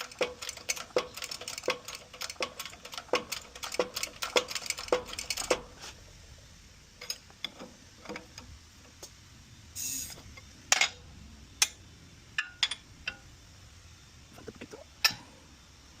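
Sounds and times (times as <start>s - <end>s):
sharp metallic clicks and knocks: 0.0s - 5.7s
short hiss: 9.8s - 10.2s.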